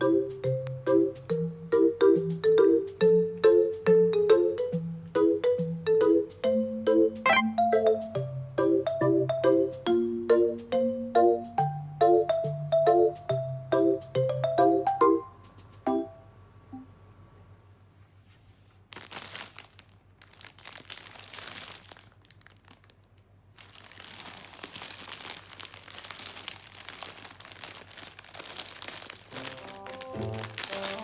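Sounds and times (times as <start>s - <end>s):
melody: 7.3s - 8.0s
crinkly material rustling: 18.2s - 31.0s.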